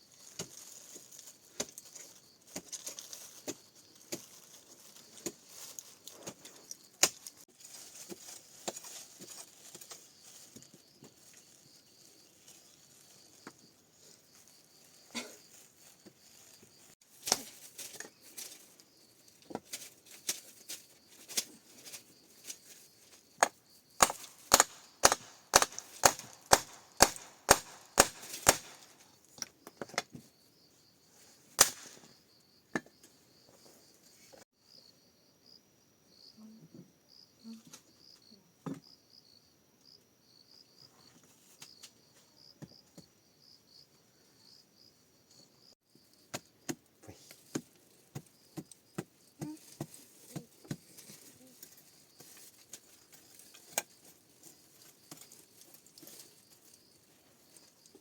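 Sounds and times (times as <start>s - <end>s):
insects chirping: 0.0s - 46.7s, 47.3s - 58.0s
chopping wood: 23.4s - 29.0s, 31.6s - 32.0s.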